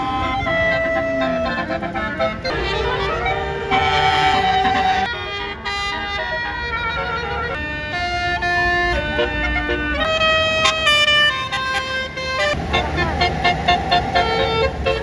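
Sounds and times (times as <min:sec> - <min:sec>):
multi-tone air horn tune: 0:00.0 - 0:15.0.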